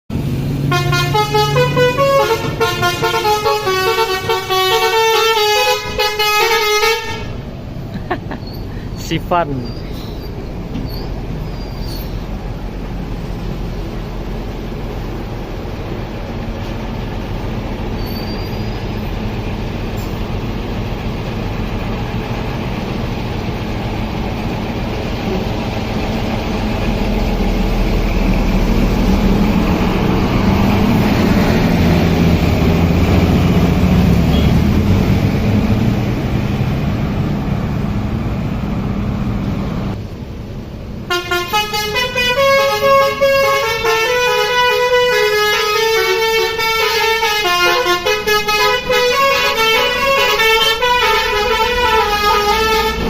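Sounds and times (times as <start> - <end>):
bus engine rumble: 0.1 - 53.0
multi-tone bus horn melody: 0.6 - 7.6, 25.2 - 25.8, 33.8 - 35.0, 41.0 - 53.0.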